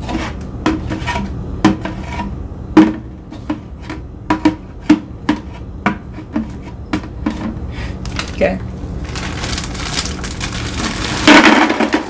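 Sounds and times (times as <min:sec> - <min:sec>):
cookies clattering into a container: 0:09.1 - 0:12.0.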